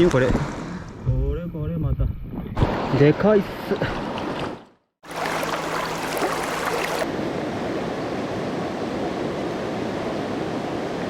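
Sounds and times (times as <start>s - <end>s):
river water rushing: 5.0s - 8.4s.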